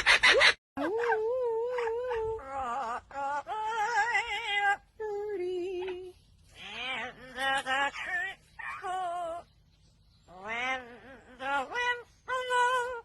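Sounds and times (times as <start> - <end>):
parrot singing: 6.6 - 9.6, 10.2 - 13.0.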